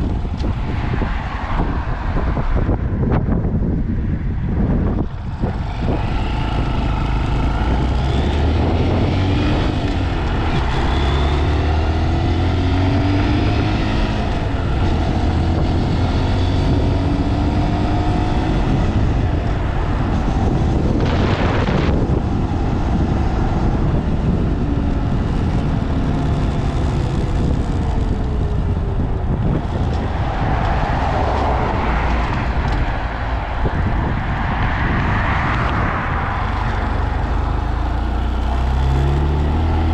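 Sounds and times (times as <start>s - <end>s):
wind buffeting microphone: 0.0s - 39.9s
motorcycle engine revving: 5.0s - 30.2s, 35.6s - 39.9s.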